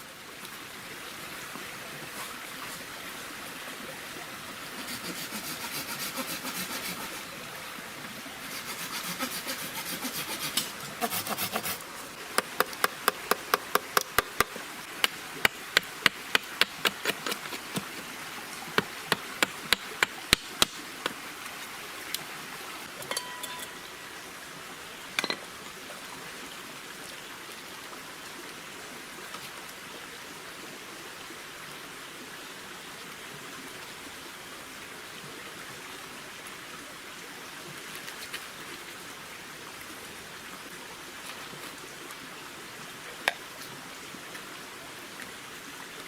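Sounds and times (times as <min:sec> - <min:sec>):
hand saw rasping on wood: 0:04.6 - 0:07.2, 0:08.4 - 0:11.9.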